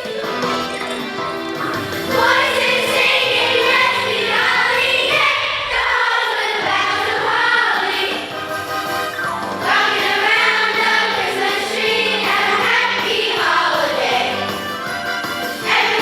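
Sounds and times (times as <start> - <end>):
instrumental accompaniment: 0.0 - 5.4, 6.6 - 16.0
choir singing: 0.0 - 8.8, 9.6 - 16.0.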